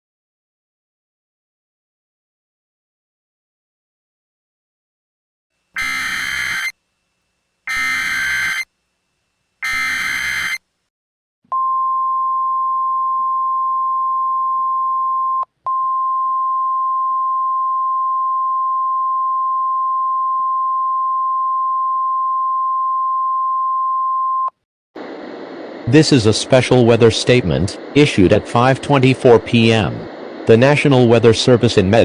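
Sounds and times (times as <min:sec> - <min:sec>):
harsh buzzing data bursts: 0:05.6 - 0:06.8, 0:07.6 - 0:08.8, 0:09.6 - 0:10.7
steady warning alarm tone: 0:05.7 - 0:06.8, 0:07.6 - 0:08.8, 0:09.6 - 0:10.7.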